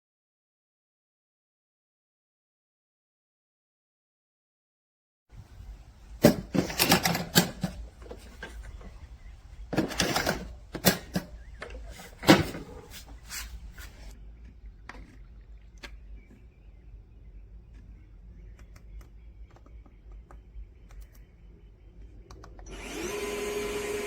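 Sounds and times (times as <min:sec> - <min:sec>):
low steady hum: 0:05.4 - 0:24.0.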